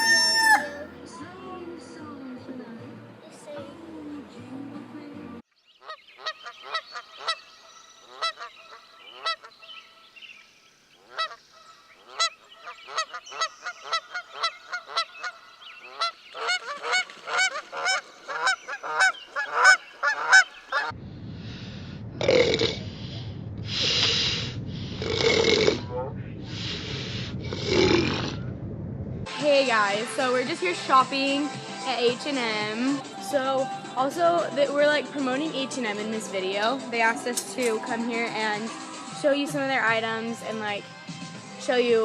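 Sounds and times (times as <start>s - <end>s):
rumbling noise: 20.9s - 30.7s.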